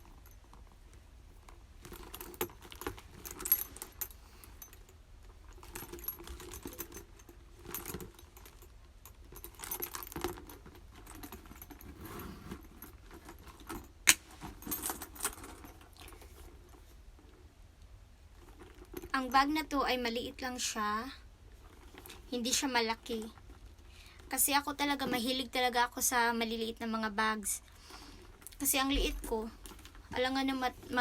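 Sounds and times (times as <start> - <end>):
handbag rustling: 1.3 - 17.0, 27.8 - 31.0.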